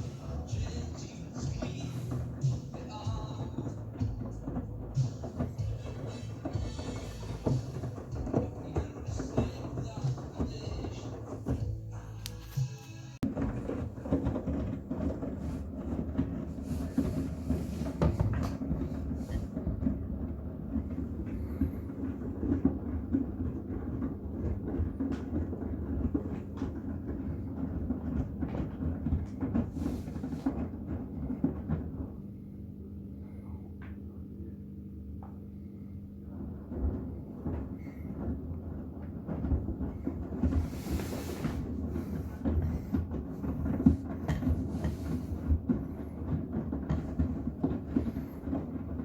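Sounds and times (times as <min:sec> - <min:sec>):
low steady hum: 0:00.0 - 0:24.5
washing machine drum tumbling: 0:00.0 - 0:32.6, 0:35.6 - 0:49.0.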